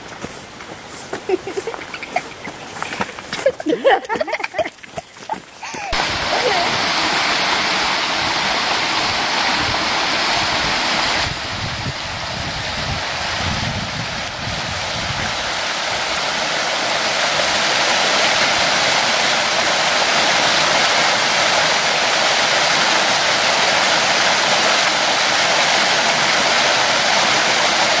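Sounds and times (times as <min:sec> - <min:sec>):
creek water rushing: 0:00.0 - 0:28.0.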